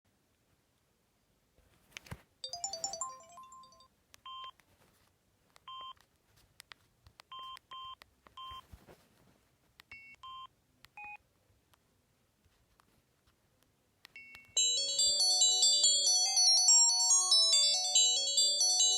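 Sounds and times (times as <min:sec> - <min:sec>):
phone melody notes: 0:02.4 - 0:03.9, 0:14.2 - 0:18.9
phone keypad beeps: 0:02.4 - 0:04.6, 0:09.9 - 0:11.2, 0:14.2 - 0:15.3.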